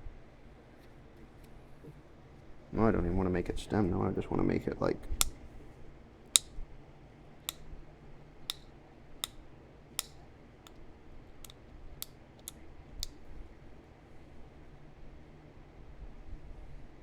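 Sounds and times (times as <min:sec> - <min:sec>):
stone flakes clicking off: 0:10.0 - 0:10.2.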